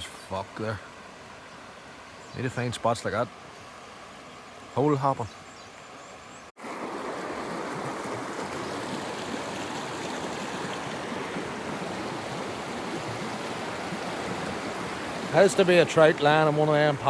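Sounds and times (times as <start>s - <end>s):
river water rushing: 0.0s - 5.0s, 5.9s - 17.0s.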